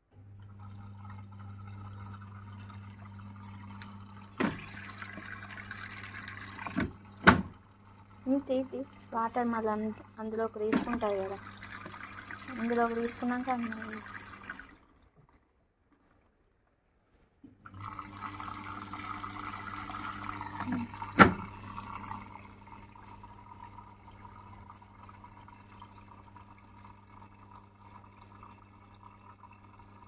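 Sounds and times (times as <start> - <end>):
low machine hum: 0.0 - 14.9, 17.6 - 30.0
water rushing into washing machine: 0.0 - 15.5, 17.5 - 30.0.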